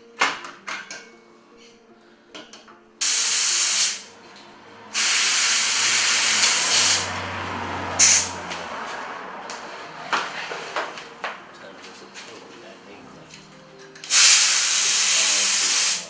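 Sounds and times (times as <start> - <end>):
compressed air hissing: 3.0 - 4.1, 4.9 - 7.2, 7.9 - 8.4, 14.1 - 16.0.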